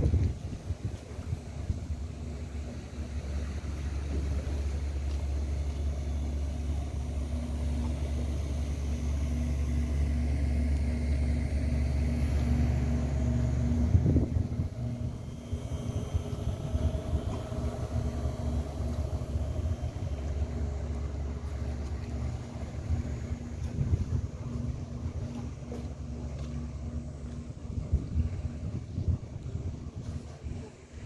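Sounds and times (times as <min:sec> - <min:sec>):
wind on microphone: 0:00.0 - 0:02.7, 0:11.9 - 0:25.8, 0:27.4 - 0:31.0
boat engine droning: 0:00.0 - 0:31.0.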